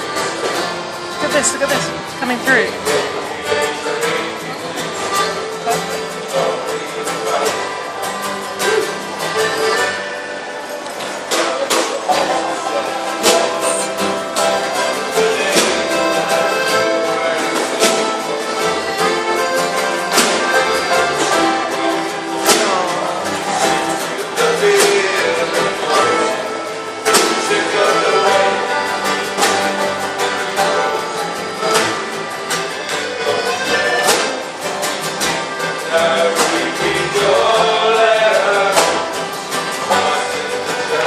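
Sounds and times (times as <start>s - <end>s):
folk band playing: 0.0s - 41.0s.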